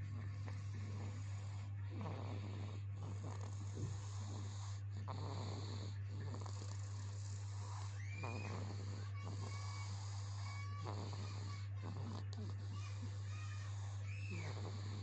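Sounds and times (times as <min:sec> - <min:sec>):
person snoring: 0:00.0 - 0:15.0
steady low hum: 0:00.0 - 0:15.0.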